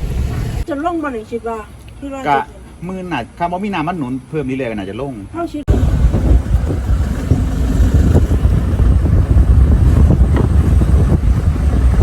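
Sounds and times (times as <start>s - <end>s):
truck engine and road rumble: 0.0s - 12.0s
wind buffeting microphone: 5.7s - 12.0s.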